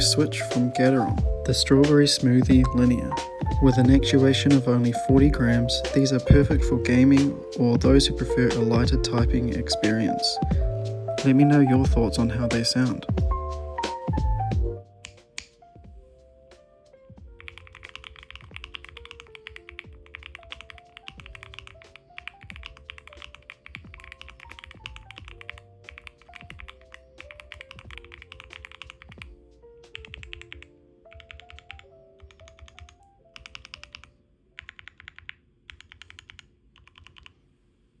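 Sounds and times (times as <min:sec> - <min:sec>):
soft music: 0:00.0 - 0:36.1
mechanical keyboard typing: 0:17.4 - 0:37.4.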